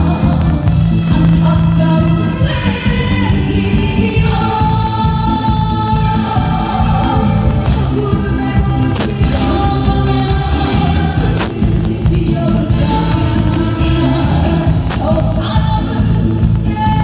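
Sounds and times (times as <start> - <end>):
amplified backing track with beat: 0.0 - 17.0
woman singing: 0.0 - 17.0
sharp percussion hits: 8.9 - 9.8.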